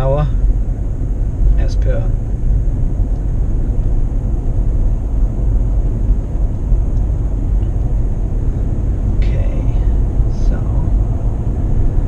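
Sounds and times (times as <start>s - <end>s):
road and tyre rumble in car: 0.0s - 12.0s.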